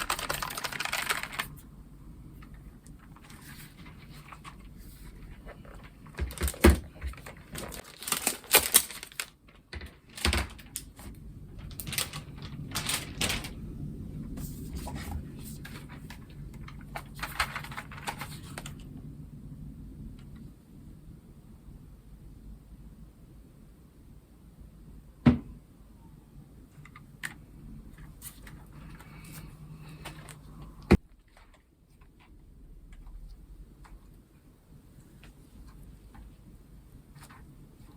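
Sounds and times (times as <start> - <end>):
box and packaging rustling: 0.0 - 1.6, 2.4 - 13.7, 14.3 - 18.9, 26.9 - 32.4.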